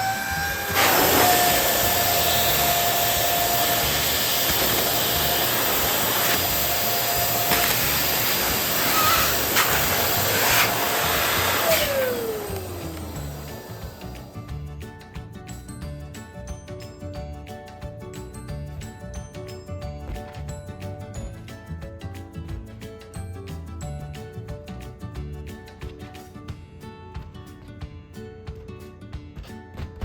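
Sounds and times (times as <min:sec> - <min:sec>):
electric pump motor whine: 0:00.0 - 0:14.6
air rushing: 0:00.6 - 0:14.2.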